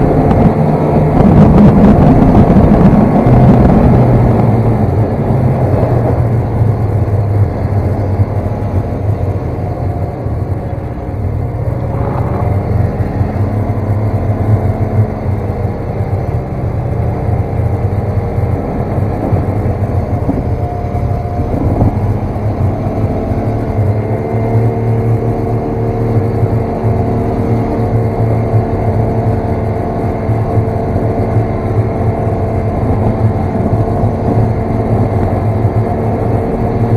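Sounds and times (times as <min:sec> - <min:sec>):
snowmobile engine running: 0:00.0 - 0:36.9.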